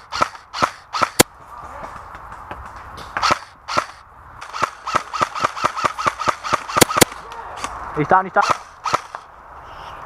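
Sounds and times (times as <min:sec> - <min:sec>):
airsoft gun shots: 0:00.0 - 0:01.3, 0:03.2 - 0:07.2, 0:08.4 - 0:09.2.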